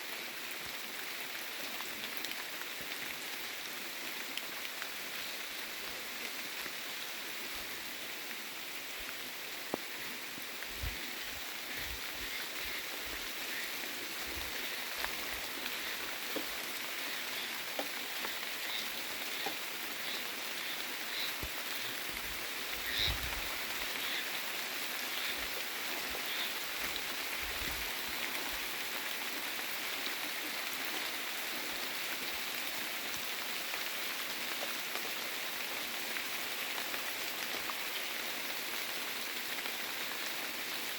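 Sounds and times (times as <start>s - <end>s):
raindrops striking close by: 0.0s - 40.9s
steady rain falling: 0.0s - 40.9s.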